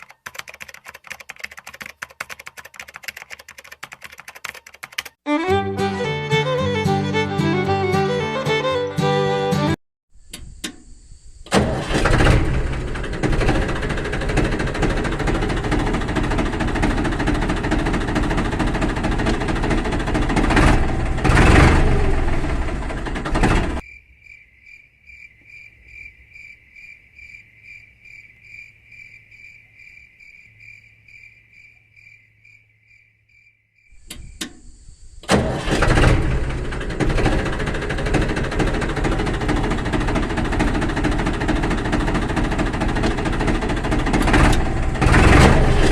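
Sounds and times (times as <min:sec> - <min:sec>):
small engine running: 0:11.5 - 0:23.8, 0:35.2 - 0:45.9.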